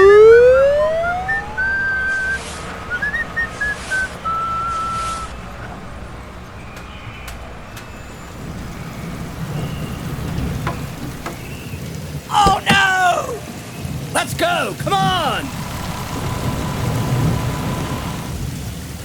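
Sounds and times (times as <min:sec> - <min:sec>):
whistled tune: 0:00.0 - 0:11.8
vehicle engine rumble: 0:00.0 - 0:19.0.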